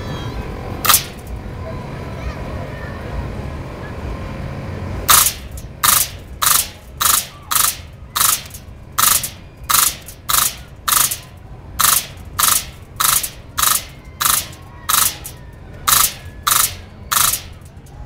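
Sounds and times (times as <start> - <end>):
bb gun firing bursts: 0.8 - 1.4, 5.1 - 17.9.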